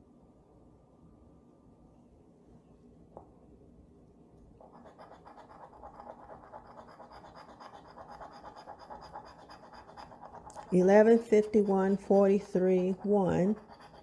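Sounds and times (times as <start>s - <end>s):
lottery ticket being scratched: 4.7s - 14.0s.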